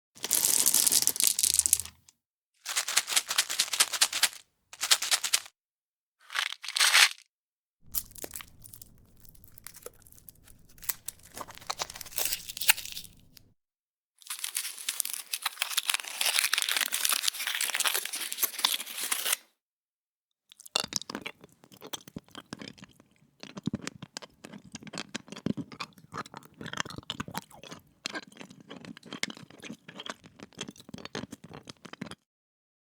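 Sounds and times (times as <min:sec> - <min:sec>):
plastic candy wrapper crinkling: 0:00.2 - 0:02.0, 0:02.7 - 0:05.5, 0:06.2 - 0:07.2, 0:07.9 - 0:13.5, 0:14.2 - 0:19.4.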